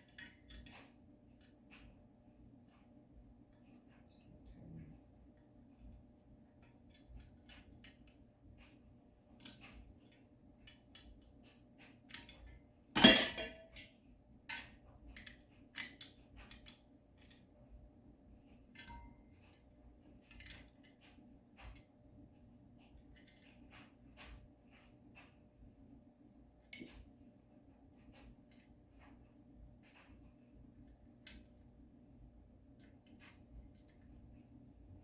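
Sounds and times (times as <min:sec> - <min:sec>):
small metal tool clicks and clinks: 0:00.0 - 0:01.5, 0:09.4 - 0:11.3, 0:12.1 - 0:17.5, 0:18.7 - 0:19.6, 0:20.2 - 0:21.9, 0:26.6 - 0:27.1, 0:30.8 - 0:31.6.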